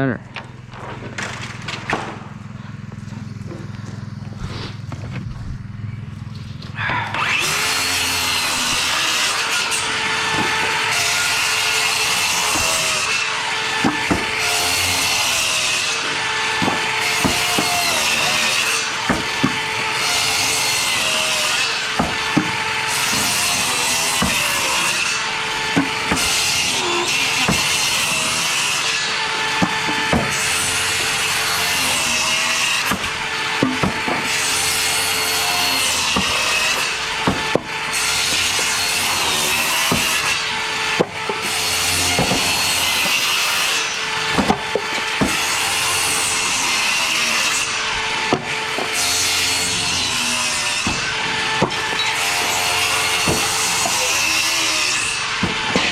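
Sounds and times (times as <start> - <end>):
power saw cutting wood: 6.6 - 55.9
sharp knocks: 13.8 - 14.4, 19.1 - 19.6, 32.8 - 34.4.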